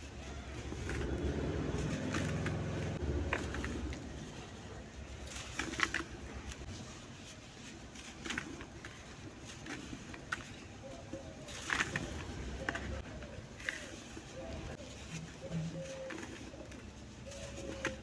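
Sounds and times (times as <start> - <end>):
dry lumps crackling by hand: 0.0 - 18.0.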